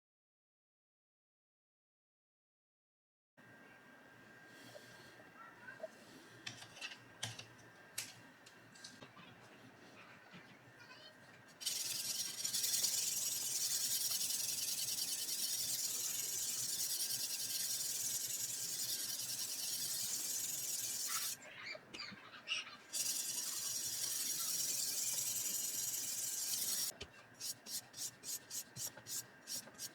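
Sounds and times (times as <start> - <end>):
knife grinding on abrasive: 11.6 - 21.4, 22.9 - 29.9.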